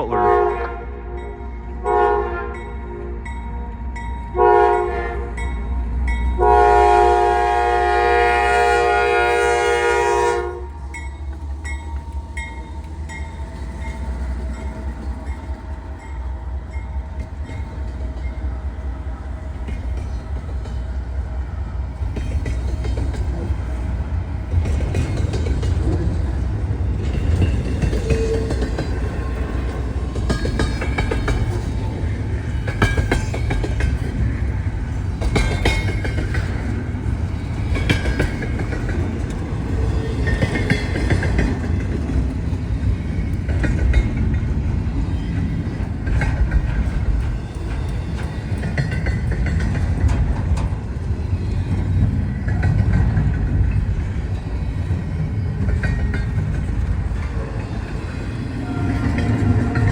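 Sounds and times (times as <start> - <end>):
locomotive horn: 0.0 - 11.0, 58.6 - 59.9
train wheels clacking over rails: 6.4 - 59.9
crossing bell dinging: 10.5 - 18.5.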